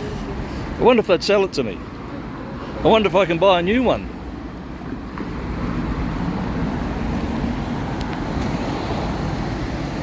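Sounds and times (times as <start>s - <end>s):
city road traffic: 0.0s - 10.0s.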